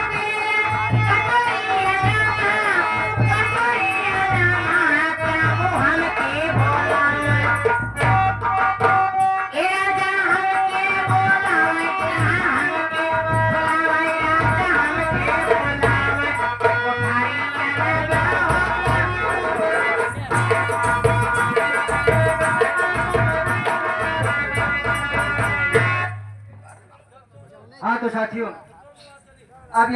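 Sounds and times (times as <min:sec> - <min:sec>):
steady drum beat: 0:00.0 - 0:26.7
wavering instrumental melody: 0:18.1 - 0:26.9.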